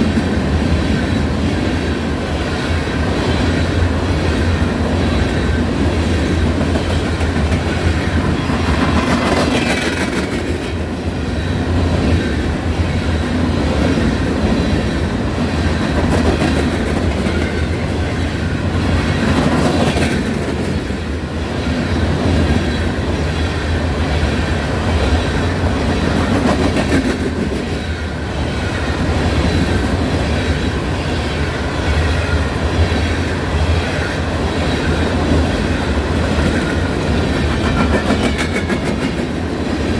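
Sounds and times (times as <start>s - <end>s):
train cars rumbling on rails: 0.0s - 39.9s
wheels clacking over rail joints: 3.2s - 23.2s, 33.6s - 39.9s.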